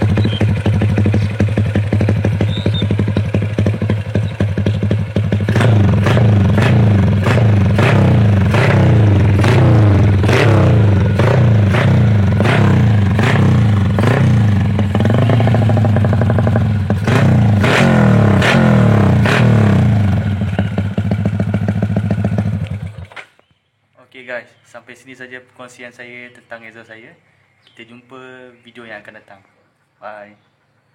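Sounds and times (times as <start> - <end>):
motorcycle engine revving: 0.0 - 23.3.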